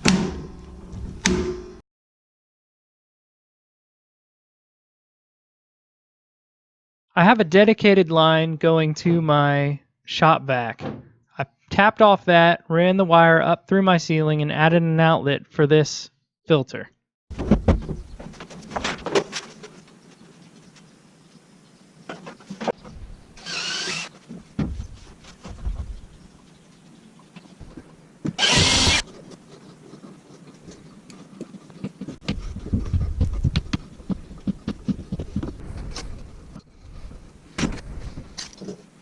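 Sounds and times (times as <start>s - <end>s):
short bursts of noise: 28.4s - 29.1s.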